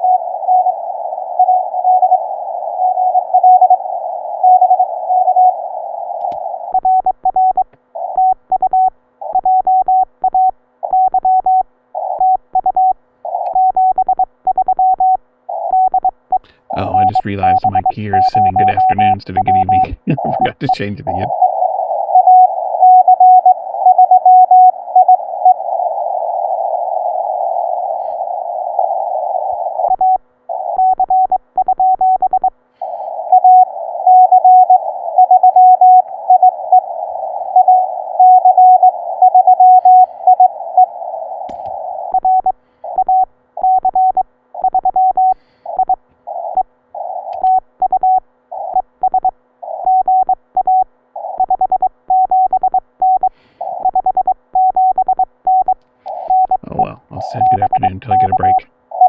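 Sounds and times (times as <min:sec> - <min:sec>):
morse code beeps: 0:12.2 - 0:21.3, 0:22.2 - 0:25.2, 0:30.8 - 0:32.5, 0:33.3 - 0:36.8, 0:37.5 - 0:40.9, 0:42.2 - 0:46.0, 0:47.4 - 0:59.0
radio hiss: 0:16.4 - 0:21.4, 0:27.2 - 0:29.7, 0:56.1 - 0:58.7.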